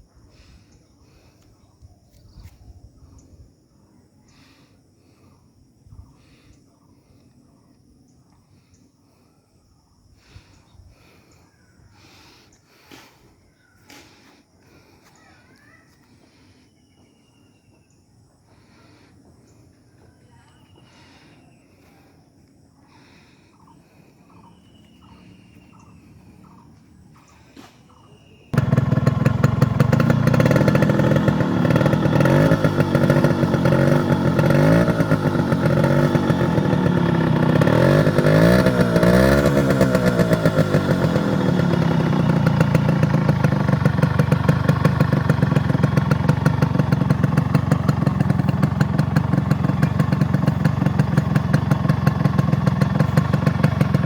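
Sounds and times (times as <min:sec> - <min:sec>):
two-stroke motorcycle engine revving: 0:28.5 - 0:54.0.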